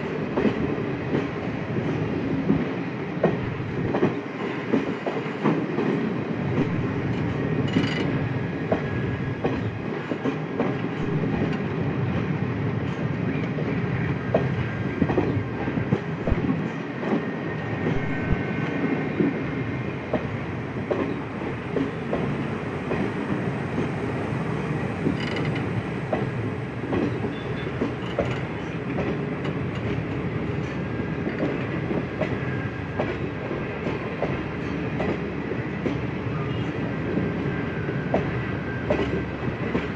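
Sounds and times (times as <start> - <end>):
train wheels rumbling: 0.0 - 39.9
clicks over rail joints: 25.1 - 26.3, 27.8 - 30.1.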